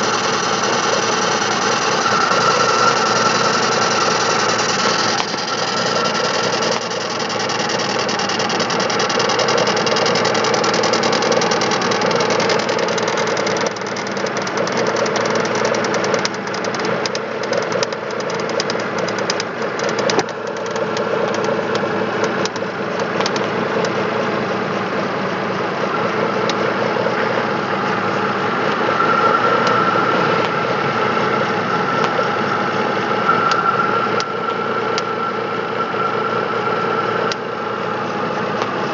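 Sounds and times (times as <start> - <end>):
high whistle: 0.0 - 13.7, 25.8 - 38.9
car engine ticking knock: 0.0 - 24.0.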